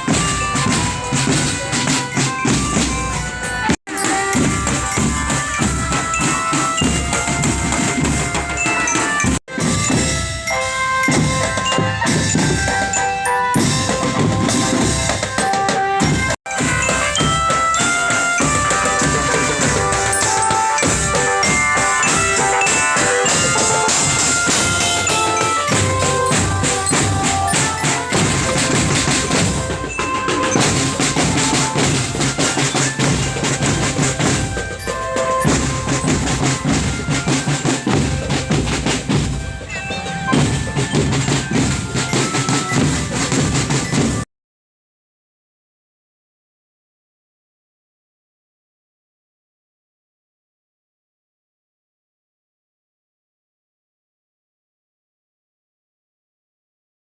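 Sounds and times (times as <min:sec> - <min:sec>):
marching drum band playing: 0:00.0 - 0:44.2.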